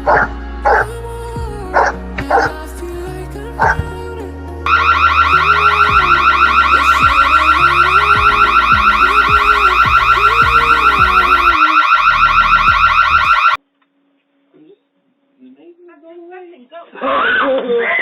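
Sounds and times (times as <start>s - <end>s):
background music: 0.0s - 13.6s
electronic alarm chirping: 4.7s - 13.6s.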